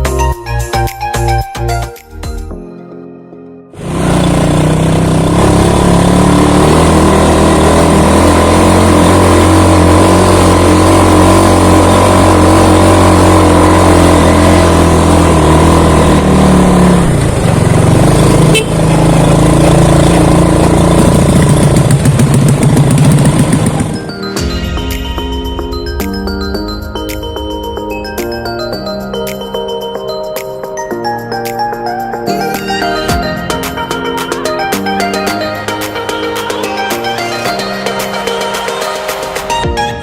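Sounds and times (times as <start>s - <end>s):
motorcycle engine running: 3.8s - 25.7s.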